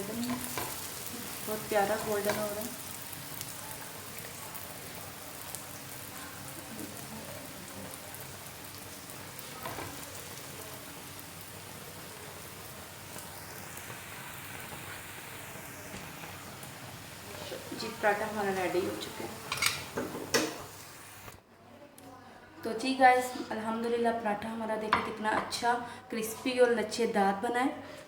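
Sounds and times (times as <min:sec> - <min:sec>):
flatbread sizzling in fat: 0:00.0 - 0:21.4.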